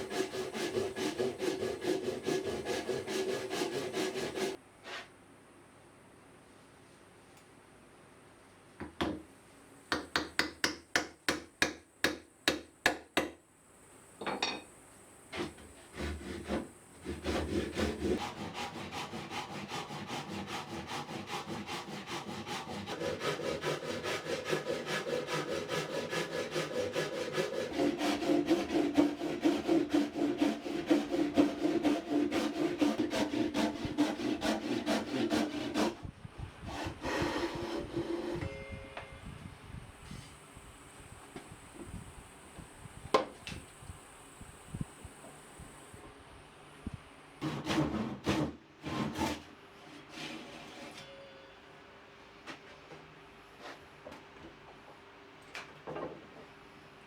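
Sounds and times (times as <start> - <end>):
rasping strokes on wood: 0.0 - 4.6, 15.4 - 36.1, 36.7 - 38.4.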